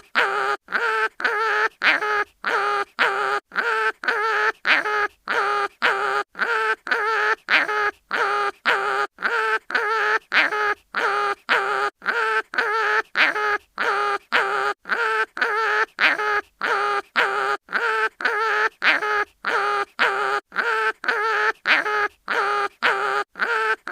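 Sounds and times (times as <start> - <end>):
cartoon animal crying in pain: 0.0 - 23.9.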